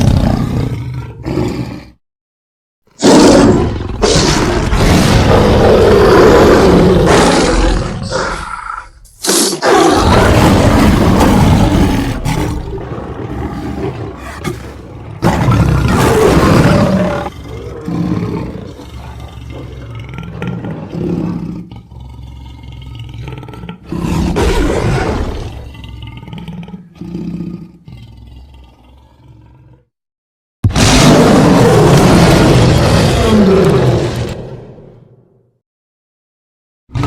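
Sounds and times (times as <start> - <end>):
lion roaring: 0.0 - 2.0, 3.0 - 29.9, 30.7 - 35.0
lion grunting calls: 3.0 - 29.9.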